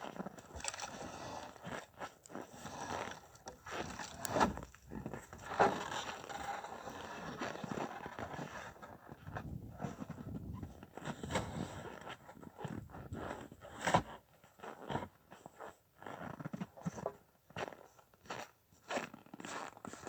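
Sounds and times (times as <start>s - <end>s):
scraping and crunching: 0.3s - 8.2s.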